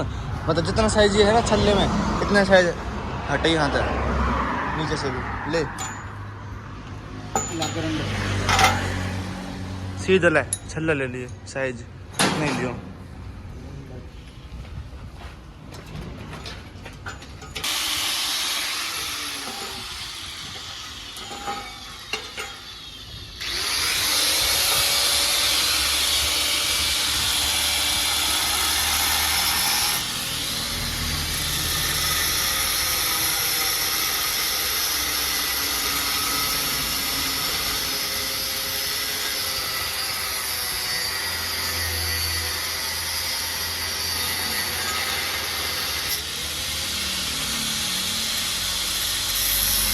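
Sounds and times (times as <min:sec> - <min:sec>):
angle grinder cutting metal pipe: 0:17.5 - 0:49.9.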